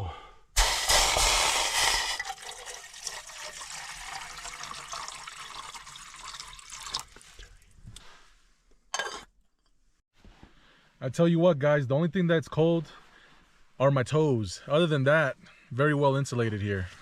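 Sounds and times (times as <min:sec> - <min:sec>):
water pouring into a pot: 0:00.6 - 0:07.6.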